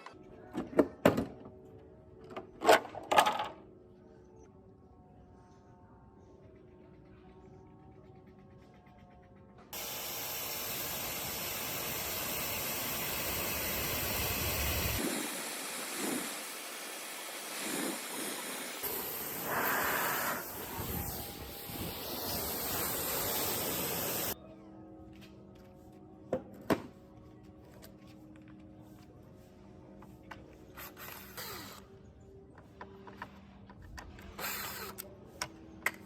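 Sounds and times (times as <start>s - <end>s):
loud steady hiss: 9.8s - 24.4s.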